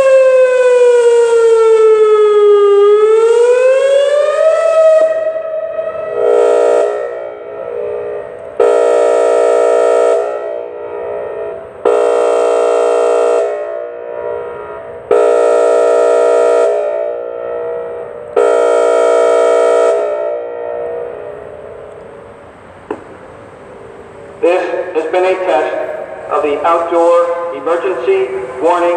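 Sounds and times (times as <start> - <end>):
warning siren air horn blasts: 0.0 - 28.9.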